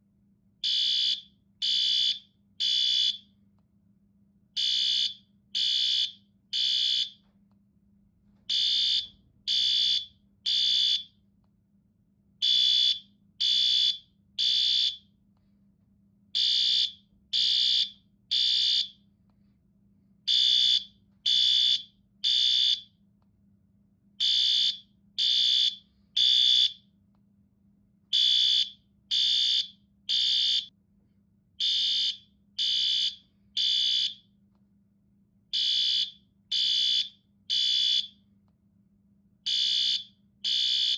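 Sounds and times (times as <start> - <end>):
fire alarm beeping: 0.6 - 3.3, 4.6 - 7.3, 8.5 - 11.2, 12.4 - 15.1, 16.4 - 19.0, 20.3 - 22.9, 24.2 - 26.8, 28.1 - 30.7, 31.6 - 34.3, 35.5 - 38.2, 39.5 - 40.9.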